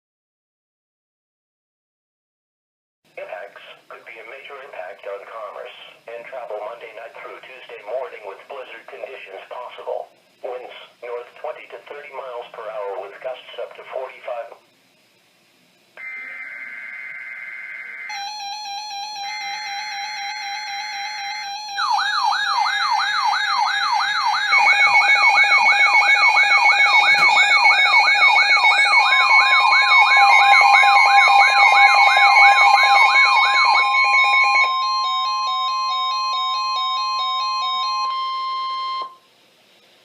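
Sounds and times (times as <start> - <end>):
siren-like sweeping tone: 16.0 - 39.2
steady long alarm tone: 16.0 - 39.2.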